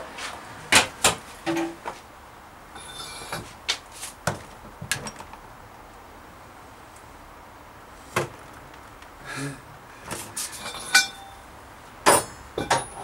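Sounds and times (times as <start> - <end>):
short metallic ring: 10.6 - 11.5
tools knocking and clinking: 10.7 - 11.4, 12.0 - 13.0.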